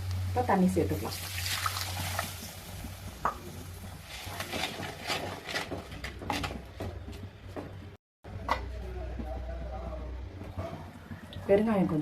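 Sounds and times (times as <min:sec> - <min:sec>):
utensil scraping and clinking pot: 0:03.8 - 0:06.8.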